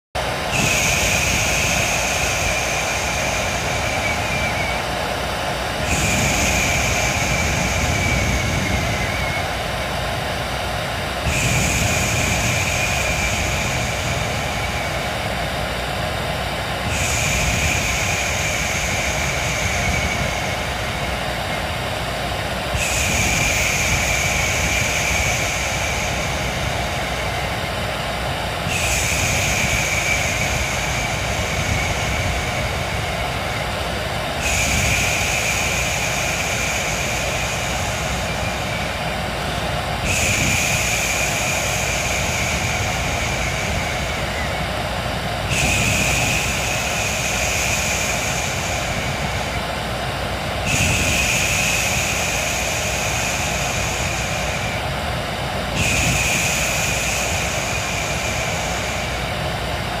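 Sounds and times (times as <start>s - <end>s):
hair dryer running: 0.2s - 60.0s.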